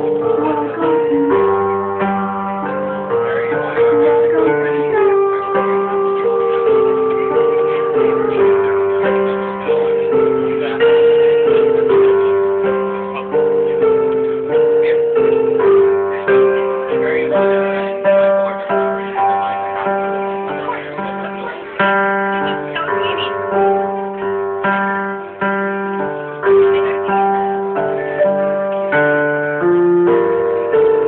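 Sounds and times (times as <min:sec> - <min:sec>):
live keyboard music: 0:00.0 - 0:31.0.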